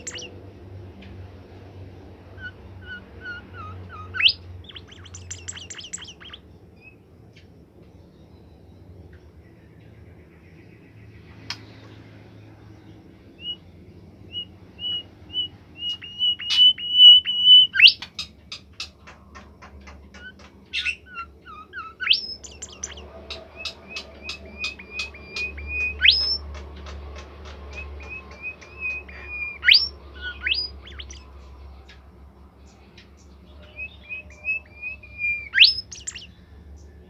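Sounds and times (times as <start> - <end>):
bird clicking notes: 0.0 - 0.3, 4.7 - 6.4, 22.3 - 23.0
songbird whistling: 0.0 - 0.3, 2.4 - 7.0, 13.3 - 13.7, 14.3 - 18.1, 20.1 - 26.6, 27.7 - 31.3, 33.6 - 36.4.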